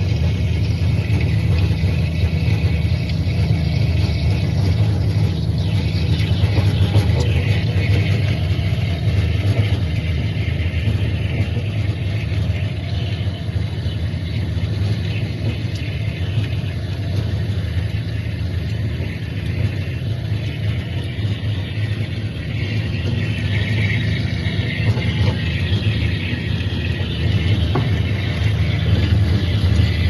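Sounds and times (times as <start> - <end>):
drilling machine hum and hiss: 0.0 - 30.0.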